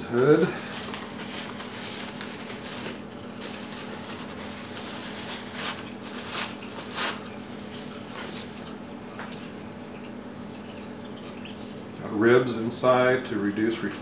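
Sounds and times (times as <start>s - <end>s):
steady low hum: 0.0s - 14.0s
plastic lens hood rustling: 0.6s - 8.7s.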